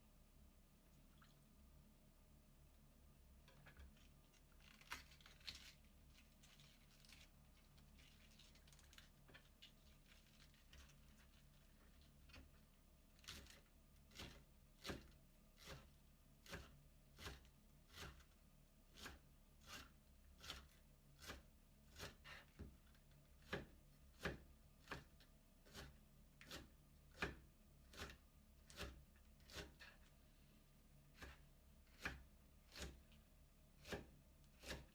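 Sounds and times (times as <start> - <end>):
knife shredding cabbage: 3.8 - 30.1, 31.1 - 34.9.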